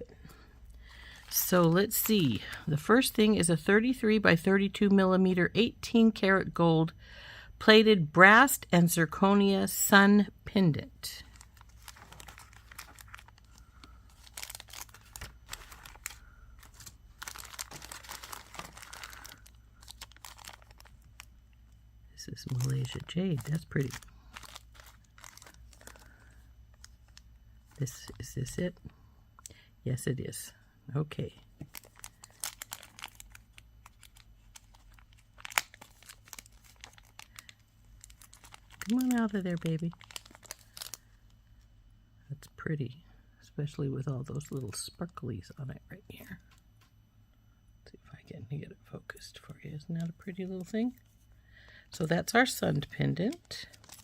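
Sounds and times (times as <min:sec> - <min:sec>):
plastic packets crinkling: 0:00.6 - 0:02.8, 0:11.2 - 0:28.5, 0:31.5 - 0:41.6, 0:51.8 - 0:54.0.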